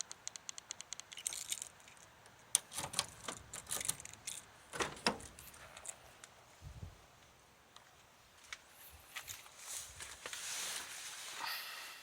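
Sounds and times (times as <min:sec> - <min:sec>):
sharp clicks and knocks: 0:00.0 - 0:06.3
car keys jangling: 0:01.0 - 0:06.0.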